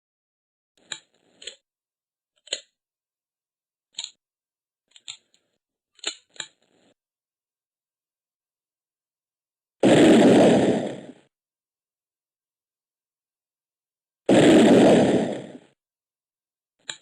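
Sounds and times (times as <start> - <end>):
sharp mechanical clicks: 4.9 - 6.7.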